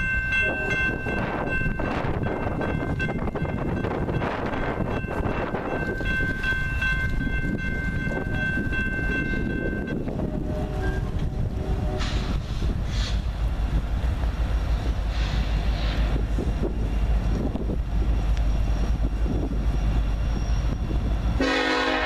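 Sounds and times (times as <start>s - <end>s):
freight train rumbling: 0.0s - 22.0s
locomotive horn chord: 0.4s - 1.0s, 10.1s - 12.4s, 21.4s - 22.0s.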